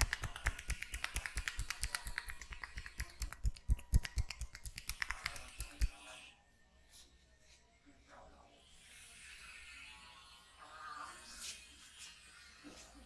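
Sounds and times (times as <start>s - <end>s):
hands slapping on a head: 0.0s - 6.0s.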